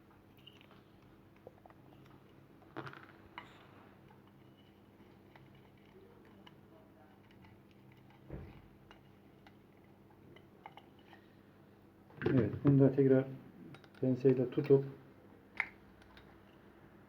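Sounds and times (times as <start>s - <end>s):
faint clicks of small parts: 0.3s - 11.3s, 13.7s - 14.9s, 15.5s - 16.7s.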